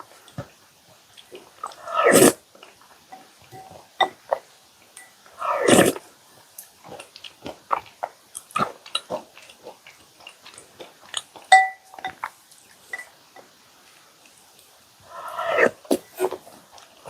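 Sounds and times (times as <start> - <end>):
wet chewing and mouth smacks: 6.6 - 11.6
ringing clink: 11.5 - 12.0.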